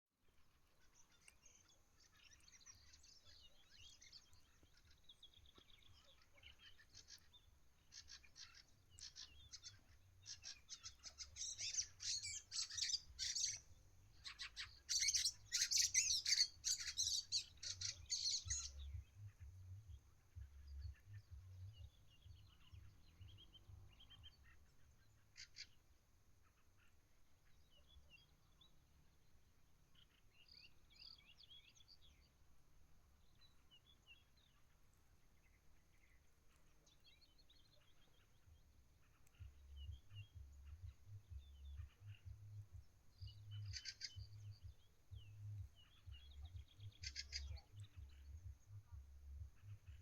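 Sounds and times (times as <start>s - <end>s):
small birds chirping: 0.2s - 50.0s.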